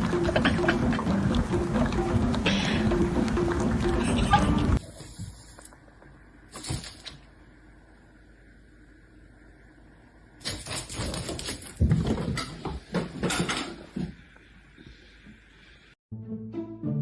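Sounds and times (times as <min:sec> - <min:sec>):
faint room hum: 0:03.8 - 0:16.0.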